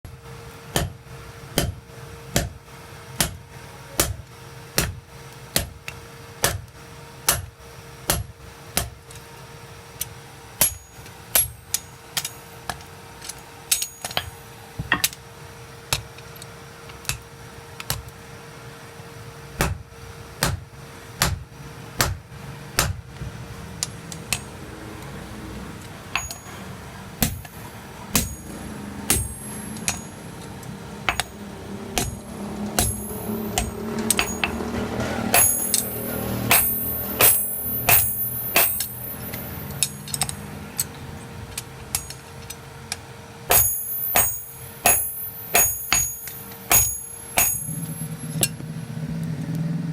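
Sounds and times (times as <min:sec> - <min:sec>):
steady low hum: 0:00.1 - 0:49.9
hammer blows: 0:26.0 - 0:40.4, 0:43.5 - 0:48.9.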